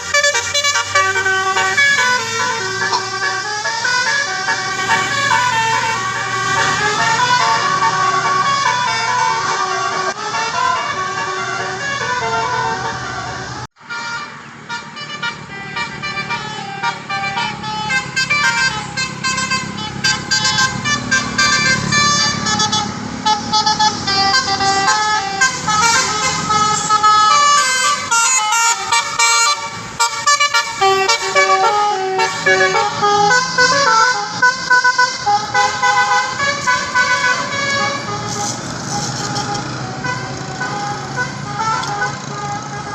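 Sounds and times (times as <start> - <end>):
bus engine running: 0.0 - 42.9
bus horns playing melodies: 0.0 - 42.9.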